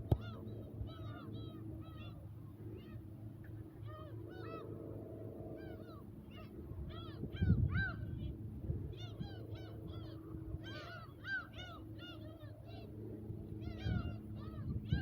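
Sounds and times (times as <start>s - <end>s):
gulls calling: 0.0s - 15.0s
wind rumble on microphone: 6.3s - 11.0s, 13.0s - 15.0s.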